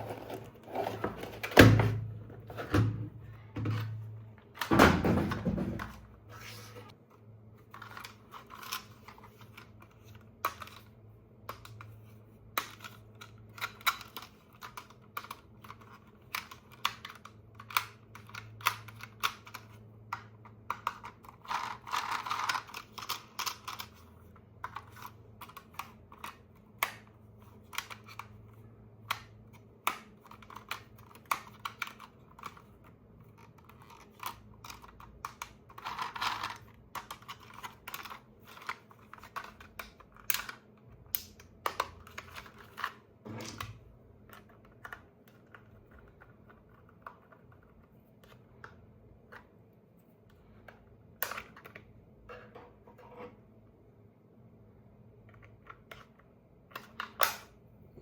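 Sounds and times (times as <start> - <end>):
plastic toy parts clicking: 12.6 - 24.0, 29.0 - 43.0.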